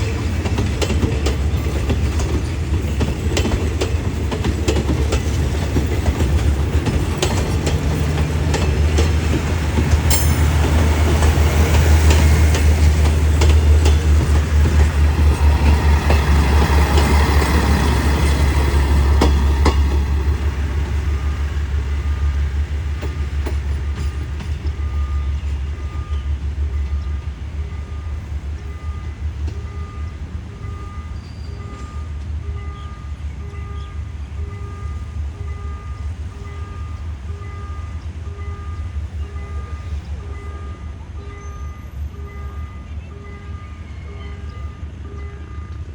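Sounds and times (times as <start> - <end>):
wheels clattering over rail joints: 0.0 - 21.2
train rumbling past: 0.0 - 45.9.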